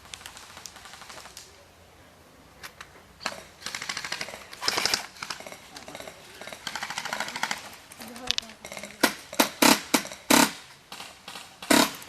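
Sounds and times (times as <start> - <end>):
airsoft guns firing bursts: 3.2 - 7.7, 9.0 - 12.0.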